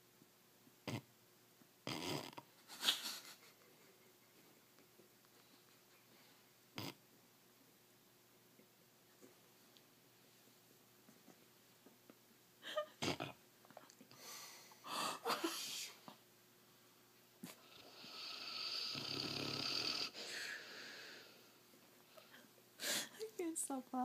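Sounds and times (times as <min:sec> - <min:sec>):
dog snoring: 0:00.8 - 0:01.1, 0:01.8 - 0:02.5, 0:06.7 - 0:07.0, 0:17.5 - 0:20.3.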